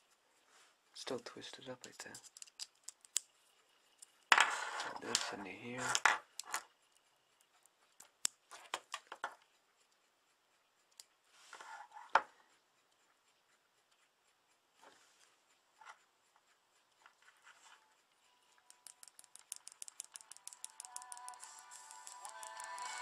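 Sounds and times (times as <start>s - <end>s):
small objects clicking and tapping: 1.8s - 3.3s, 3.9s - 6.7s, 8.0s - 9.4s, 18.6s - 23.0s.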